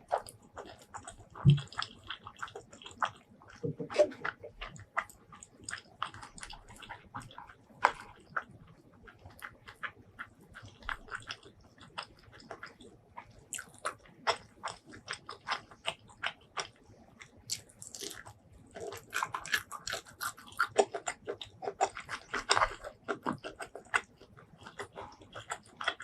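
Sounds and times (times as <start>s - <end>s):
close chewing with crunchy bites: 0.0s - 26.0s.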